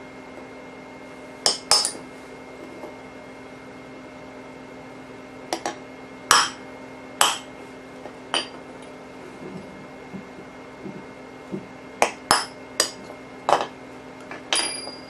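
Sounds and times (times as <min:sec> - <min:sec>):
steady low hum: 0:00.0 - 0:15.0
hammer striking steel punch: 0:06.3 - 0:06.6, 0:07.2 - 0:07.5.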